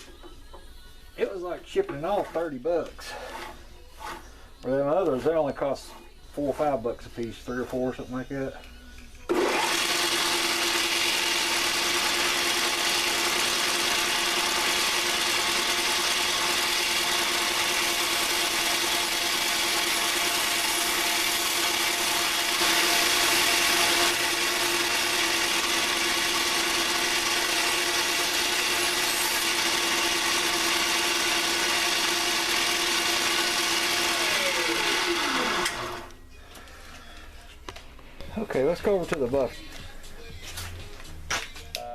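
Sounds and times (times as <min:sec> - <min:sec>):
belt grinder motor hum: 0:09.3 - 0:36.2.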